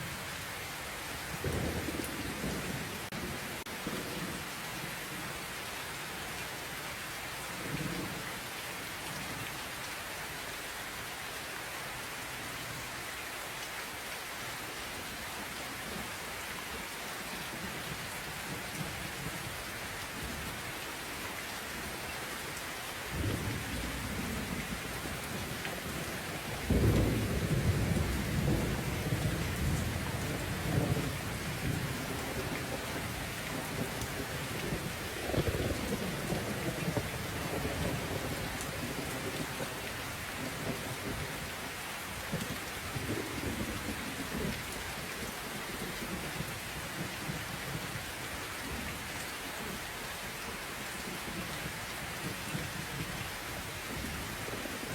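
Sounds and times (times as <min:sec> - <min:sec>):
rain falling: 0:00.0 - 0:54.9
thunder rumbling: 0:23.1 - 0:39.7.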